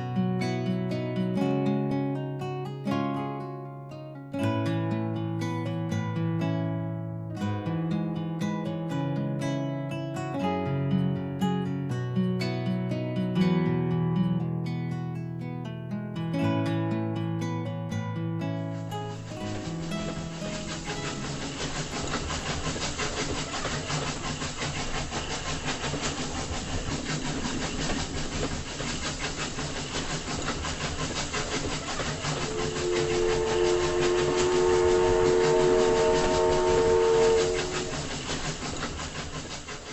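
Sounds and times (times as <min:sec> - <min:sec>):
train wheels clattering on rails: 0:18.8 - 0:39.9
train horn blast: 0:32.2 - 0:38.2.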